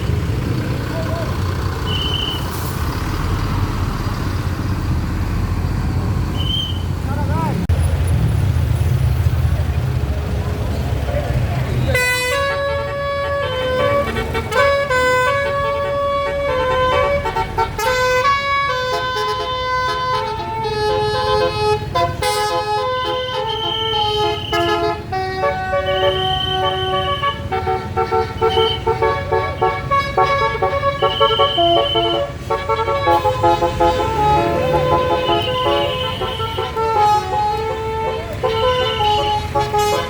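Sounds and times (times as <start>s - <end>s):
multi-tone bus horn melody: 1.8s - 2.6s, 11.8s - 40.0s.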